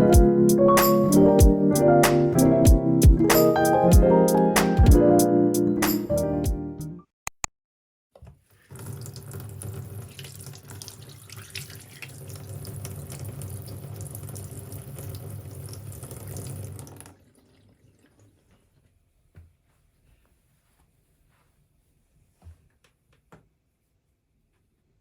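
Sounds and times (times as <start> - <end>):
tap water running into sink: 8.6 - 18.5.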